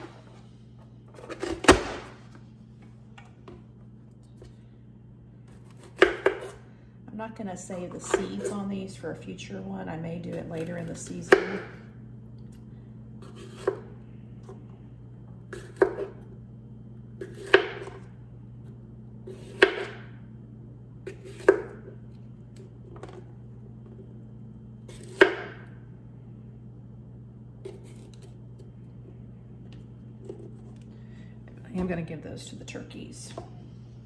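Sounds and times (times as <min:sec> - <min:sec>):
knife chopping on cutting board: 0:15.5 - 0:16.2, 0:17.2 - 0:18.0, 0:19.3 - 0:20.0.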